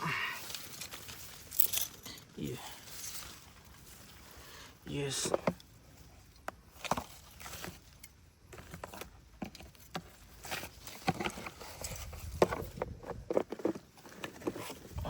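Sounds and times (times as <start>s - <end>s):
footsteps in ground litter: 0.4s - 5.8s.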